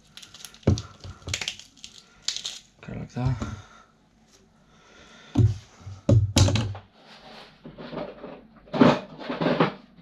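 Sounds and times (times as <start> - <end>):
clattering and rustling of parts: 5.4 - 10.0.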